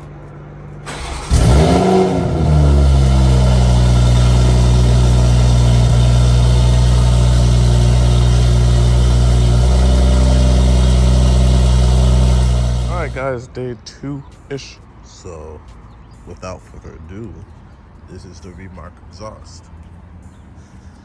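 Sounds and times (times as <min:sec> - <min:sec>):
car engine starting and idling: 0:00.0 - 0:13.4.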